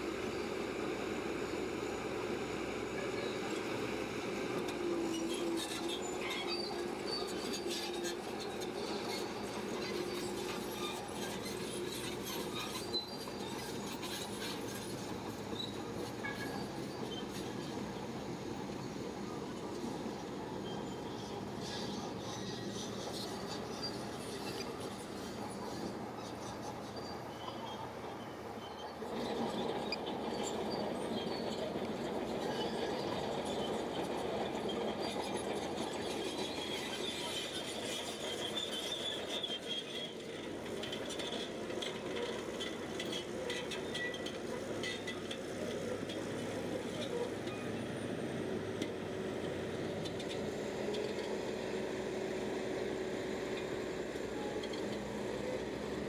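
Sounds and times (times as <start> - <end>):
bulldozer engine and tracks: 0.0 - 56.0.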